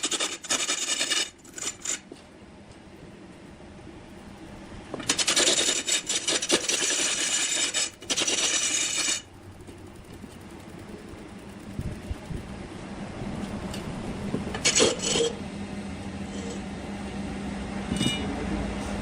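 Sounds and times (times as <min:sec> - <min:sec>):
tool scraping wood: 0:00.0 - 0:02.2, 0:05.0 - 0:09.3
machinery running: 0:02.9 - 0:18.7.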